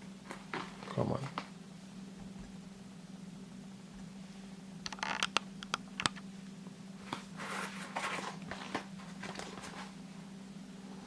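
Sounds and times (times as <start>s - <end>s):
steady low hum: 0.0s - 11.0s
packaging rustling: 7.4s - 10.0s.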